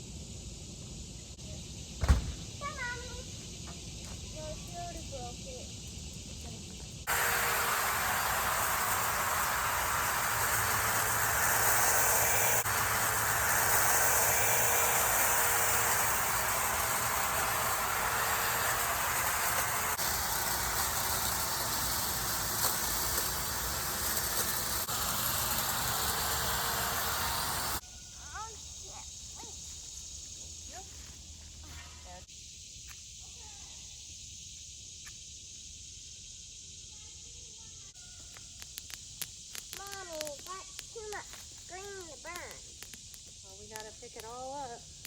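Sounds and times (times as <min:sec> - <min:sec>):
machine running steadily: 0:07.1 - 0:27.8.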